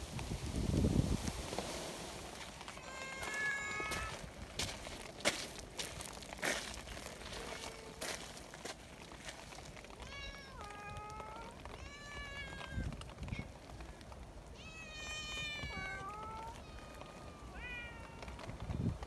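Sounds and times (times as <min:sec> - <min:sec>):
cats meowing: 0:02.7 - 0:04.4, 0:07.4 - 0:08.1, 0:09.9 - 0:13.8, 0:14.5 - 0:18.6.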